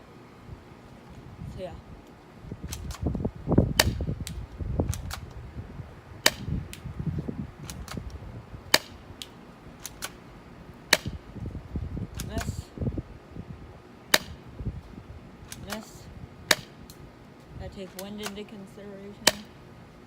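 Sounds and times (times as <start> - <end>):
airsoft pistol shots cracking: 3.7 - 5.3, 6.2 - 6.8, 8.7 - 10.2, 10.9 - 11.2, 14.1 - 14.4, 16.5 - 16.9, 19.2 - 19.6.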